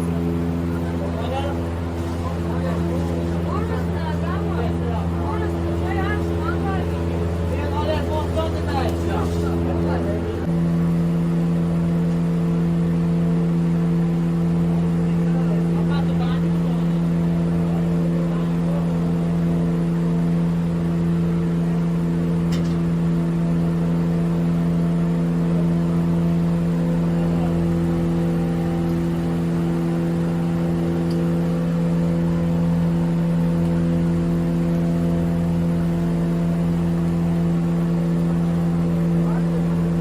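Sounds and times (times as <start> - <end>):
steady motor hum: 0.0 - 40.0.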